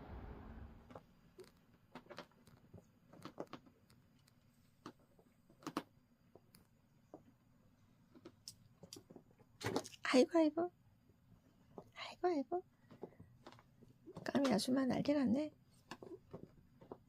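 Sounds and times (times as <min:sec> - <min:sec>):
low steady rumble: 0:00.0 - 0:00.9
faint clicks and taps: 0:01.4 - 0:07.4, 0:08.0 - 0:10.0, 0:12.8 - 0:14.7, 0:15.7 - 0:17.0.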